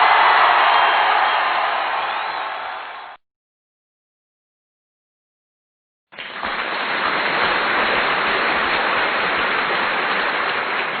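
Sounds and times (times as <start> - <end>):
audience applauding: 0.0 - 3.2, 6.2 - 11.0.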